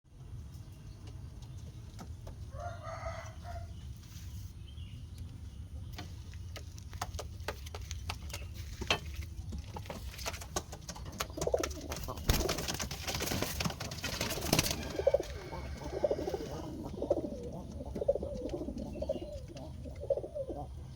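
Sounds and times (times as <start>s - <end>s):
pigeons cooing: 10.4s - 20.9s.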